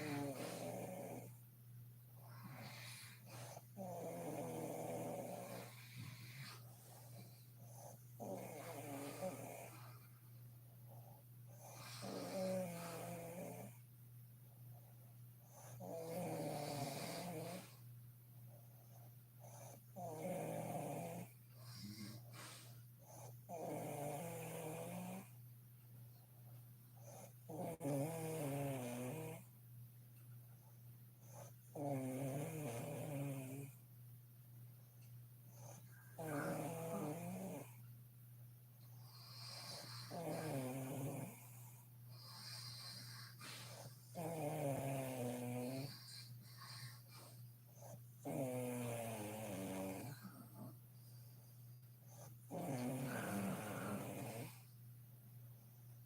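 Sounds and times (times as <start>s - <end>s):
woman snoring: 0.0s - 1.4s, 2.4s - 6.6s, 7.8s - 9.8s, 11.6s - 13.8s, 15.7s - 17.8s, 19.6s - 22.2s, 23.1s - 25.3s, 27.2s - 29.5s, 31.8s - 33.7s, 35.7s - 37.8s, 39.1s - 46.3s, 47.8s - 50.8s, 52.5s - 54.6s
soft hissing breaths: 0.0s - 1.5s, 2.1s - 14.0s, 14.6s - 25.4s, 34.6s - 56.0s
low steady hum: 0.0s - 24.1s, 24.8s - 28.0s, 29.4s - 48.3s, 49.9s - 56.0s.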